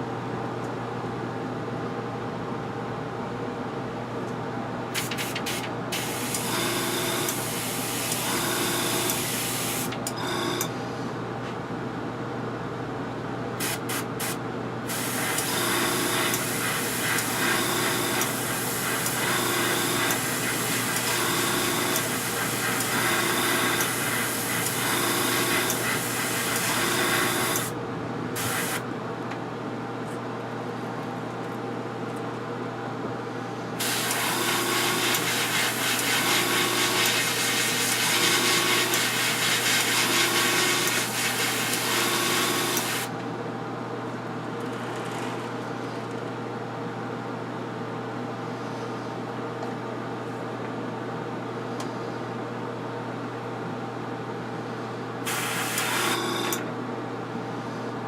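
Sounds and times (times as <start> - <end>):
air compressor humming: 4.9 - 11.0, 13.6 - 28.9, 33.8 - 43.1, 55.2 - 56.7
airbrush spraying hiss: 28.4 - 28.8.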